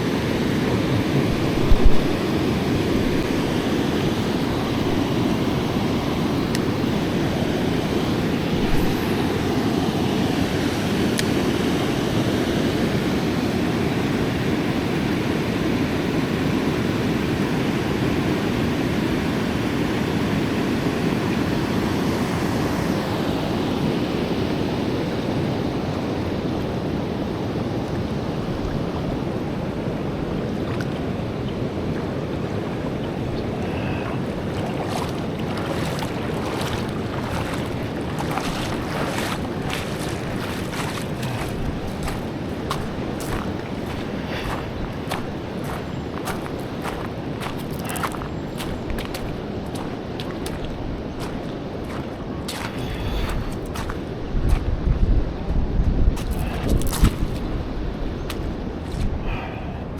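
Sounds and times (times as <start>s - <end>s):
river rushing over rocks: 29.0s - 53.9s.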